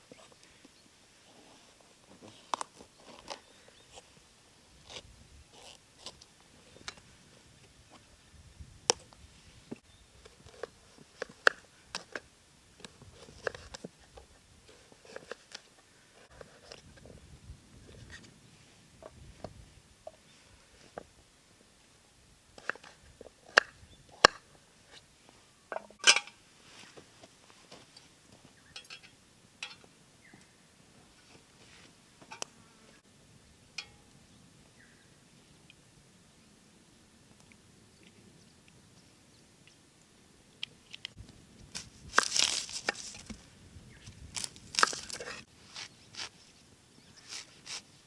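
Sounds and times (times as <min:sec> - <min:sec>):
crunching and rustling: 0:01.5 - 0:07.0, 0:41.0 - 0:48.0
camp cookware clinking: 0:25.7 - 0:26.5, 0:28.7 - 0:30.0, 0:33.7 - 0:34.2.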